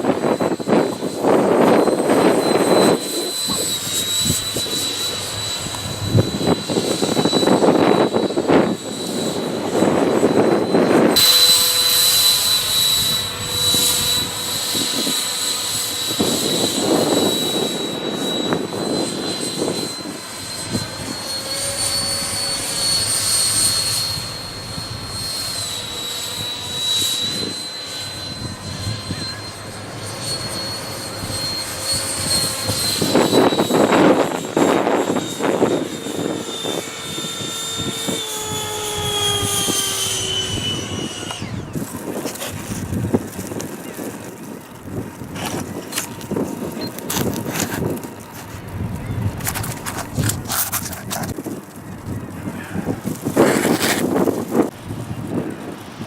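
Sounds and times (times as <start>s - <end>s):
electric fan whining: 0.0s - 56.0s
wind buffeting microphone: 0.0s - 56.0s.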